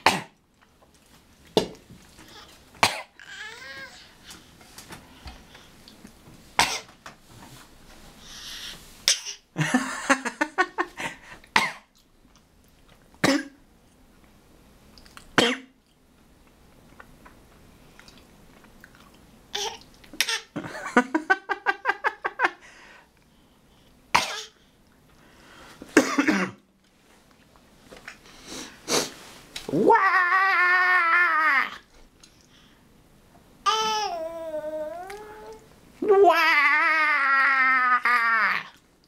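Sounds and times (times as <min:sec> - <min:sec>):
baby coughing: 0:00.0 - 0:00.4, 0:02.8 - 0:03.2, 0:06.6 - 0:06.9, 0:09.1 - 0:09.4, 0:11.6 - 0:11.9, 0:13.2 - 0:13.6, 0:15.4 - 0:15.8, 0:19.6 - 0:20.6, 0:24.2 - 0:24.6, 0:26.0 - 0:26.6.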